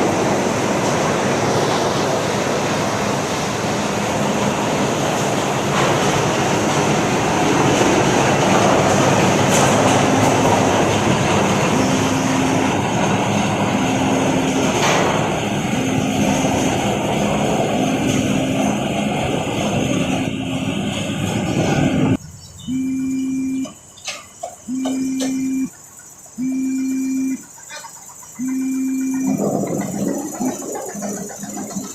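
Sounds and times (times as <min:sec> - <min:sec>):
concrete mixer and tractor din: 0:00.0 - 0:31.9
low tone: 0:22.6 - 0:23.8, 0:24.7 - 0:25.7, 0:26.4 - 0:27.4.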